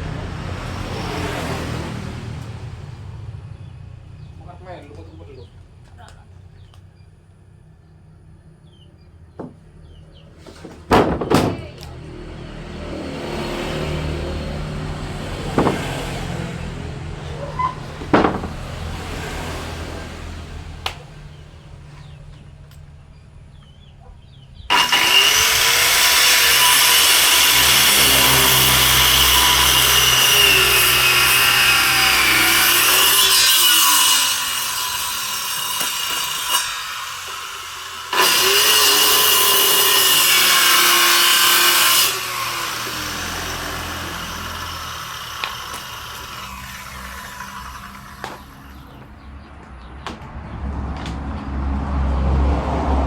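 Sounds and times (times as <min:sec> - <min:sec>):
knocks on wood: 0:09.4 - 0:09.6, 0:10.7 - 0:11.7, 0:15.5 - 0:16.2, 0:18.1 - 0:18.6, 0:48.2 - 0:50.4
power tool cutting wood: 0:12.6 - 0:21.0, 0:24.7 - 0:49.1.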